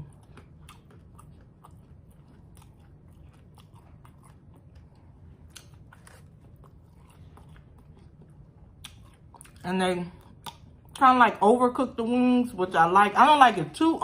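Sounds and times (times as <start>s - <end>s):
chewing crunchy fried chicken: 0.0s - 11.0s.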